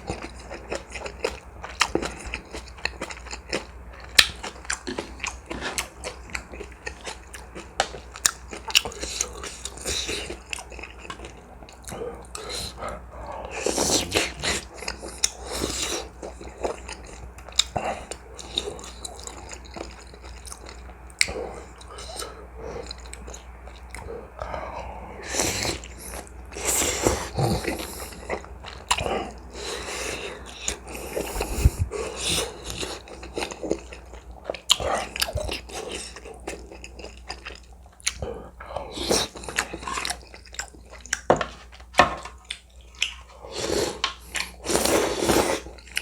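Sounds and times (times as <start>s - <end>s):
wet chewing and mouth smacks: 39.0s - 43.3s.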